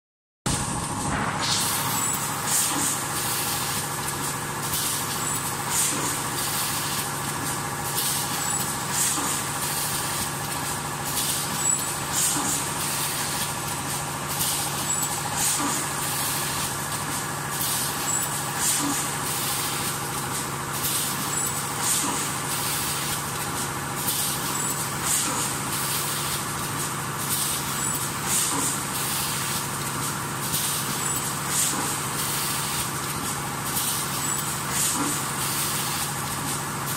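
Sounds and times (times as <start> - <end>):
machine mechanical hum: 0.5 - 36.9
compressed air hiss: 1.1 - 3.8, 15.4 - 18.0, 18.6 - 21.2, 21.8 - 23.1, 28.2 - 29.6, 33.7 - 36.6.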